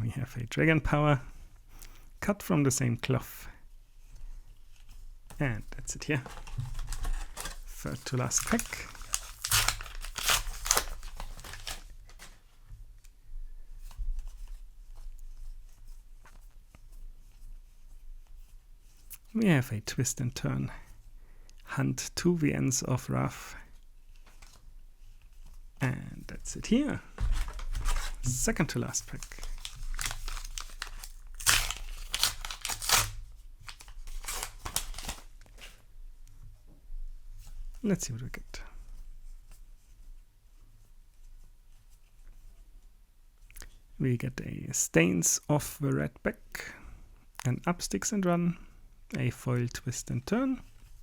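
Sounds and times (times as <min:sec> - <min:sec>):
wrapper crinkling and tearing: 0:06.0 - 0:12.4, 0:27.2 - 0:35.8.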